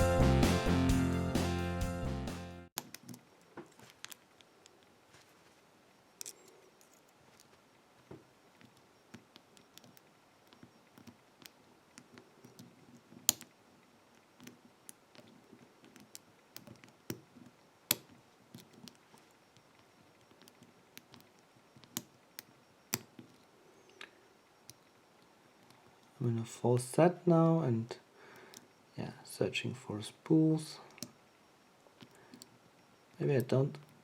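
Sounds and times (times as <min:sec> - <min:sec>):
lock pick clicking and scraping: 0:06.2 - 0:07.5, 0:08.6 - 0:23.4, 0:32.0 - 0:32.6.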